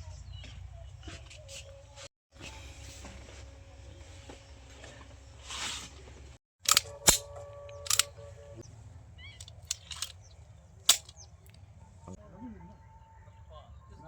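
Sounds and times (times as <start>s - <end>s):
pistol shots: 6.6s - 8.1s, 10.9s - 11.2s.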